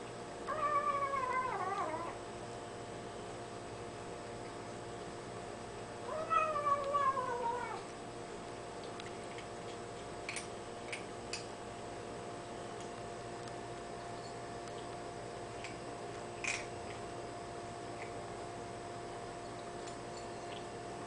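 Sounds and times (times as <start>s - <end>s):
kitten mewing: 6.1s - 7.9s.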